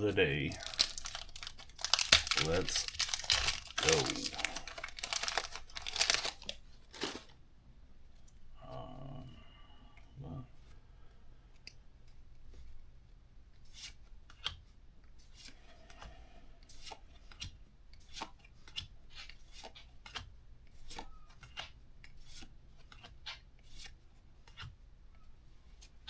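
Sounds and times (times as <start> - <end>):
trading cards flicking and rubbing: 0.5 - 7.3.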